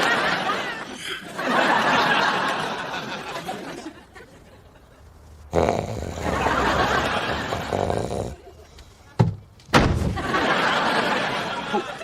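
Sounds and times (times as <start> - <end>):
studio audience laughing: 0.0 - 5.0, 6.2 - 8.7, 10.2 - 12.0
loud snore: 5.4 - 8.5.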